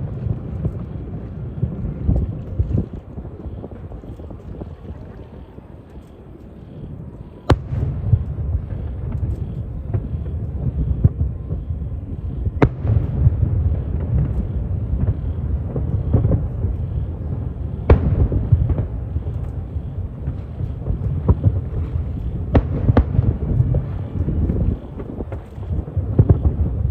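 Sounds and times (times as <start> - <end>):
fireworks exploding: 0.0 - 26.9
loud firework bangs: 7.5 - 26.9.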